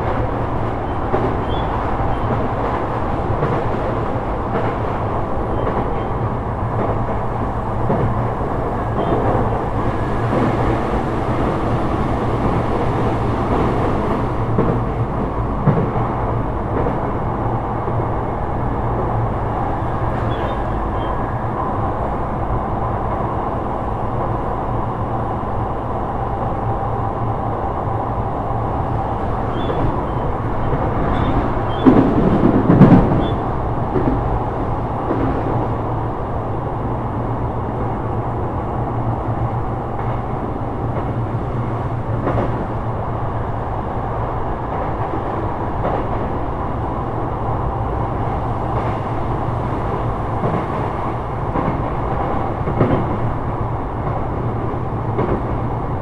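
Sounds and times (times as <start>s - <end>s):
train motor hum: 0.0s - 18.2s
train rolling rumble: 0.0s - 56.0s.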